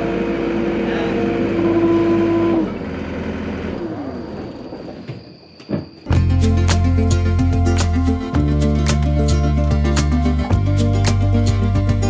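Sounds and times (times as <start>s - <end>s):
farm machinery engine droning: 0.0s - 4.9s.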